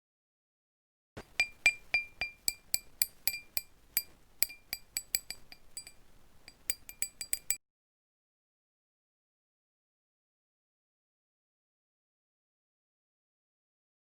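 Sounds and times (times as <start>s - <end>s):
glass object clinking: 1.2s - 7.6s.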